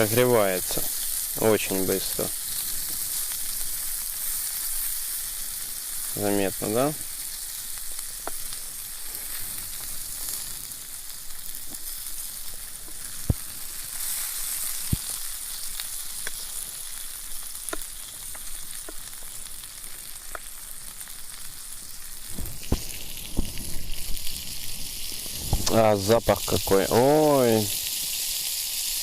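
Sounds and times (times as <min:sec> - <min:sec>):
food sizzling in a pan: 0:00.0 - 0:29.0
sharp pops of frying: 0:00.0 - 0:29.0.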